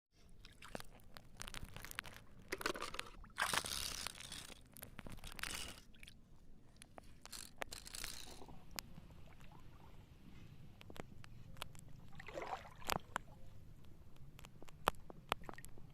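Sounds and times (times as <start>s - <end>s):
water swishes: 8.1s - 10.9s, 11.8s - 13.8s
wading through shallow water: 11.8s - 13.8s.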